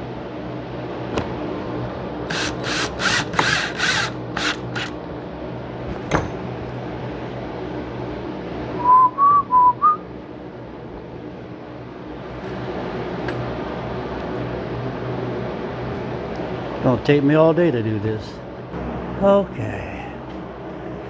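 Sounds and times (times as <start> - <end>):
drill driving screws: 2.3 - 4.9
person whistling: 8.8 - 10.0.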